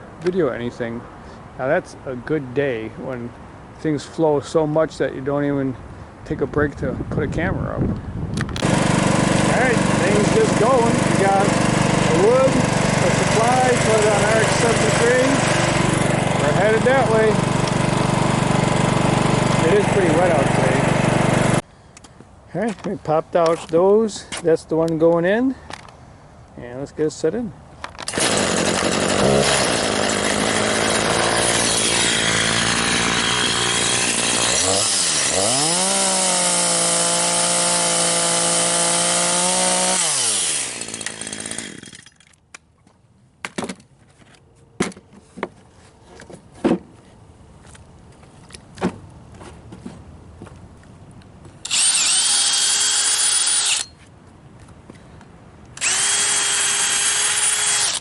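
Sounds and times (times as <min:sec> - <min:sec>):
cordless drill driving fasteners: 0:08.4 - 0:18.0, 0:27.9 - 0:42.2, 0:51.6 - 0:54.0, 0:55.7 - 0:58.0
power saw cutting wood: 0:08.6 - 0:21.6, 0:28.1 - 0:42.0, 0:51.6 - 0:54.0, 0:55.8 - 0:58.0.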